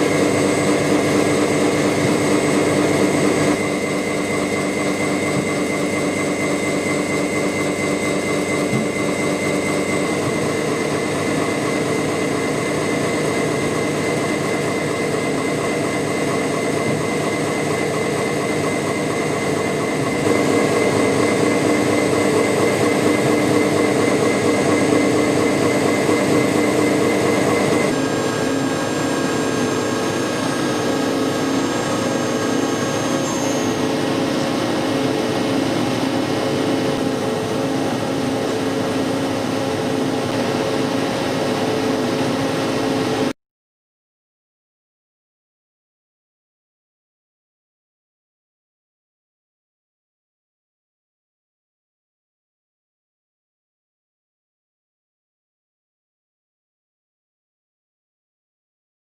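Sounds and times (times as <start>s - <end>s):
industrial machinery humming: 0.0s - 43.3s.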